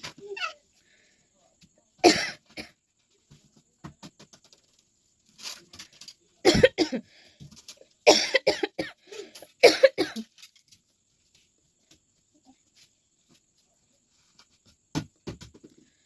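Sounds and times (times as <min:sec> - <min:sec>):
person coughing: 0:02.0 - 0:02.7, 0:06.5 - 0:07.0, 0:08.1 - 0:10.3.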